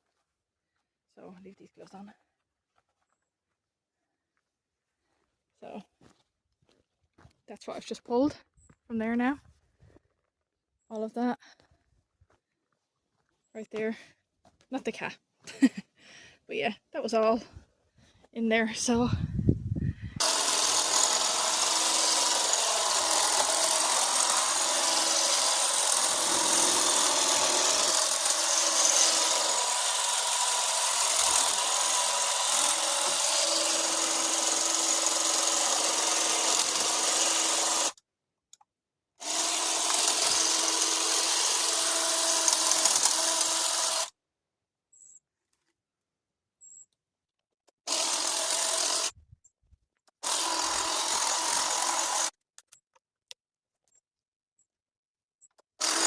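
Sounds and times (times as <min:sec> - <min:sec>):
hedge trimmer running: 0:20.2 - 0:38.0, 0:39.2 - 0:44.1, 0:47.9 - 0:49.2, 0:50.2 - 0:52.3, 0:55.8 - 0:56.0.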